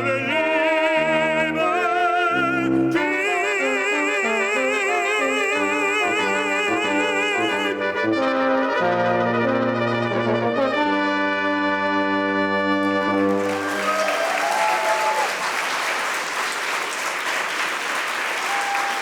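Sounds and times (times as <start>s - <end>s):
tenor voice singing with vibrato: 0.0s - 8.2s
brass quintet playing chords: 0.0s - 13.9s.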